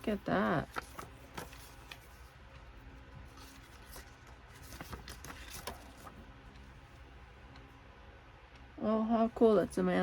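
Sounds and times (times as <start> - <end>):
paper rustling and tapping: 0.0 - 6.7
low room hum: 0.0 - 10.0.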